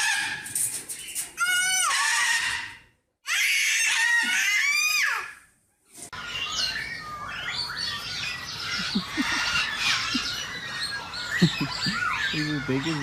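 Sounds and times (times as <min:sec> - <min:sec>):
birds chirping and twittering: 0:00.0 - 0:03.0, 0:05.7 - 0:13.0.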